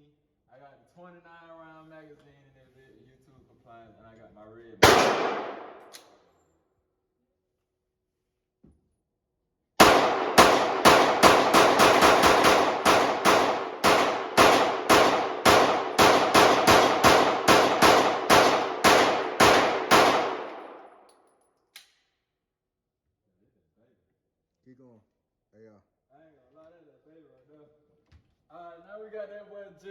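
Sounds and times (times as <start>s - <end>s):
pistol shots with ringing echo: 4.8s - 6.0s, 9.8s - 21.0s.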